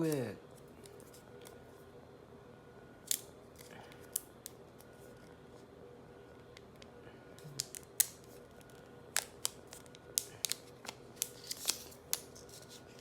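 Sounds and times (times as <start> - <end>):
packaging clicks and snaps: 7.4 - 13.0.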